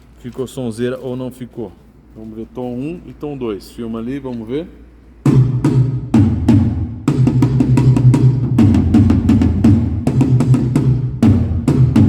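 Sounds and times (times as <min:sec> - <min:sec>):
tom drums struck with sticks: 0:05.2 - 0:12.0.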